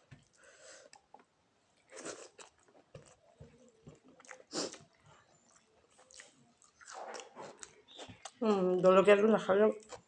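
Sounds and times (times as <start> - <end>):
person chewing food: 0.0 - 8.4.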